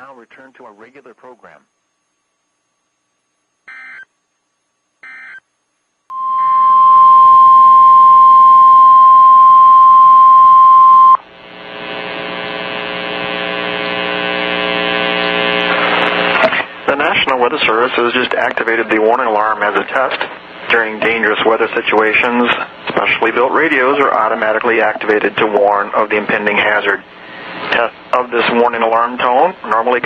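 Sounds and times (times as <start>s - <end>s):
buzzing hum: 0.0s - 30.0s
steady warning alarm tone: 3.6s - 4.2s, 5.0s - 5.5s, 6.1s - 11.2s
short electronic beeps: 5.0s - 5.4s.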